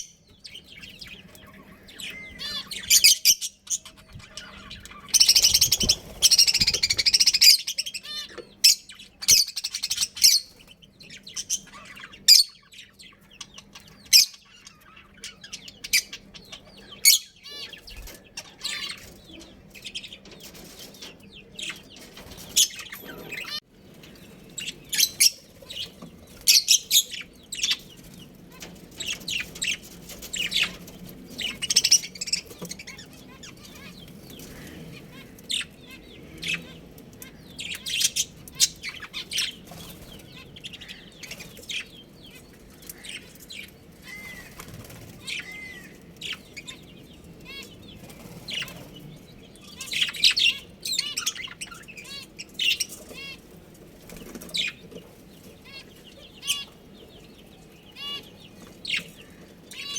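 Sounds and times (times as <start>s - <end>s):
budgerigars chirping: 0.0s - 59.9s
wings flapping: 5.1s - 7.6s, 22.0s - 23.4s, 44.1s - 46.0s, 53.9s - 55.1s.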